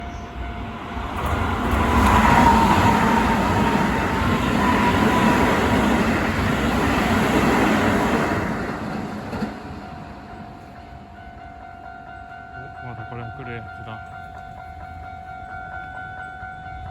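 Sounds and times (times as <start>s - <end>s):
crossing warning tone: 0.0s - 7.6s
faint train whine: 0.0s - 16.9s
train rumbling and rattling: 0.0s - 16.9s.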